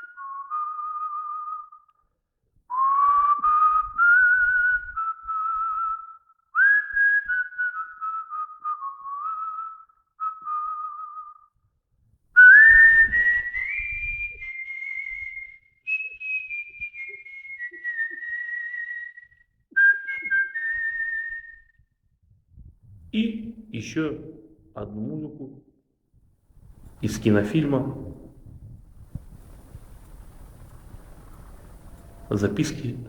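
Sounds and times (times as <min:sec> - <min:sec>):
man whistling a melody: 0:00.0 - 0:02.1, 0:02.7 - 0:11.7, 0:12.4 - 0:22.2, 0:29.0 - 0:33.0.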